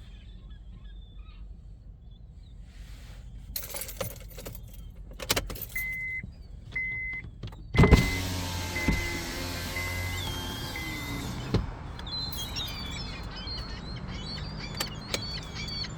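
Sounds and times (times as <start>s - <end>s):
car engine starting: 6.6s - 15.9s
car engine running: 7.3s - 15.9s.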